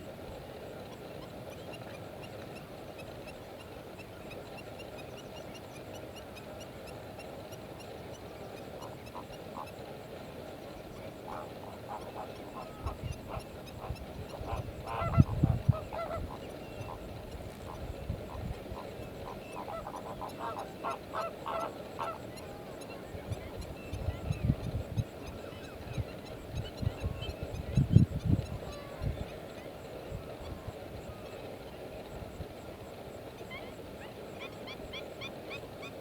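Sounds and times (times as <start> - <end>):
flamingos honking: 11.1 - 23.1.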